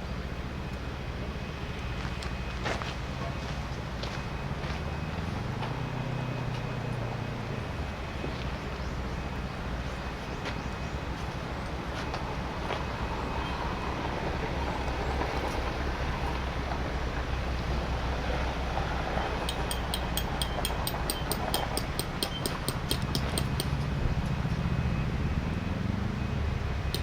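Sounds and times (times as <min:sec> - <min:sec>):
sharp high metallic ticks: 0:19.4 - 0:24.0.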